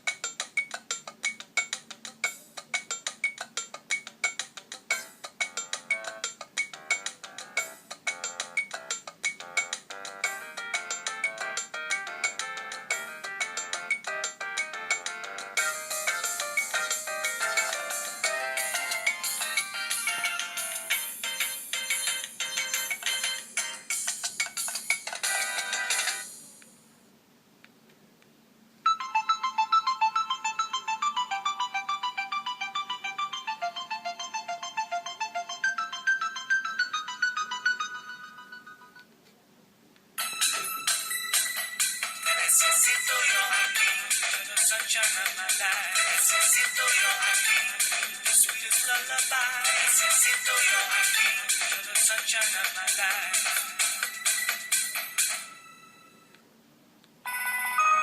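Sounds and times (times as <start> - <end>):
mobile phone ringtone melody: 4.9 - 24.0, 25.2 - 26.3, 28.9 - 39.1, 40.2 - 52.0, 53.1 - 56.3, 57.2 - 58.0.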